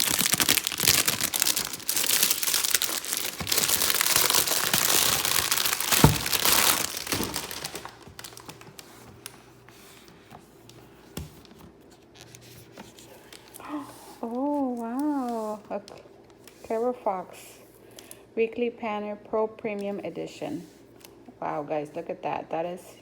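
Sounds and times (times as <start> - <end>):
packaging crinkling and tearing: 0.0 - 9.5, 10.6 - 15.6.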